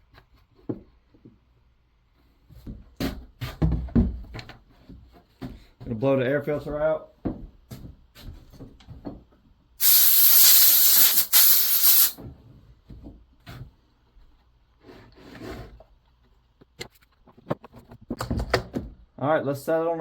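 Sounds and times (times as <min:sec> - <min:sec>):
compressed air hissing: 0:09.8 - 0:12.2.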